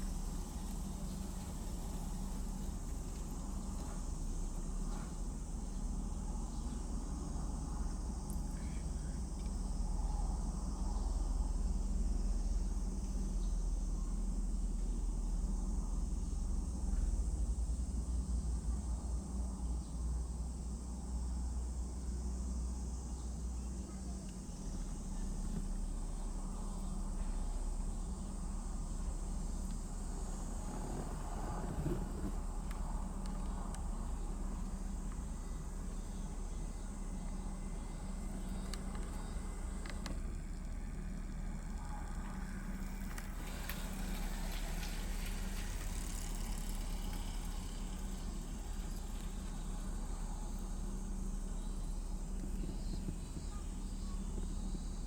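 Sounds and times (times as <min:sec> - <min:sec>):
high-pitched hiss: 0:20.6 - 0:55.0.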